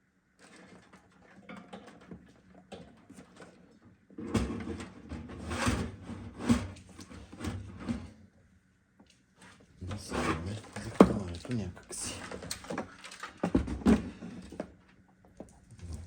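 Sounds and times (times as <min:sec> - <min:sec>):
knocks and scraping in metal case: 0:09.8 - 0:14.7.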